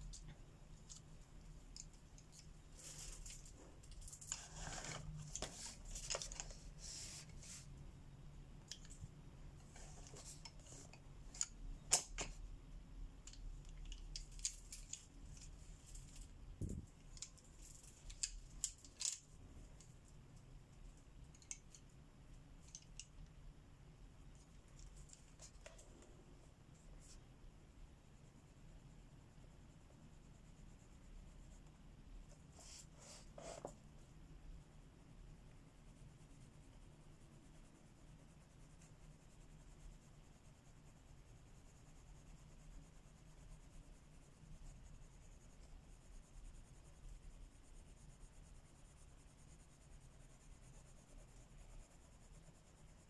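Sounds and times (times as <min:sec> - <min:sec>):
pencil scratching on paper: 0:01.8 - 0:07.8, 0:09.6 - 0:11.4, 0:29.7 - 0:34.1, 0:35.5 - 0:53.0.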